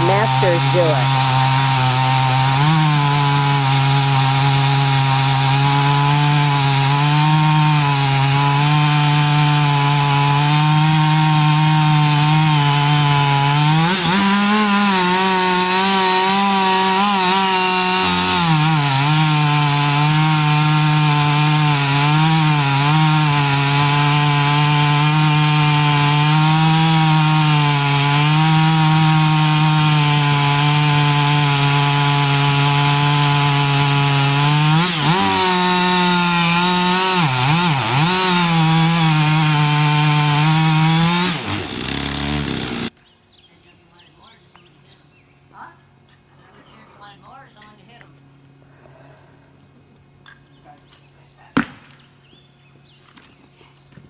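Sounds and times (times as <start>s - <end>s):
chainsaw cutting wood: 0.0s - 43.0s.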